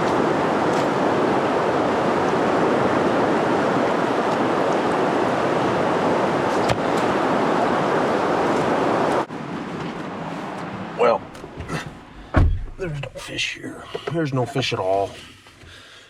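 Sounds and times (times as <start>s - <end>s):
river water roaring: 0.0s - 12.2s.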